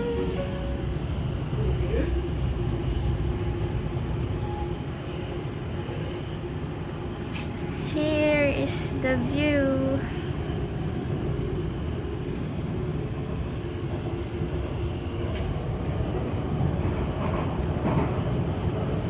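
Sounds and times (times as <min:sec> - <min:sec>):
train rumbling: 0:00.0 - 0:19.0.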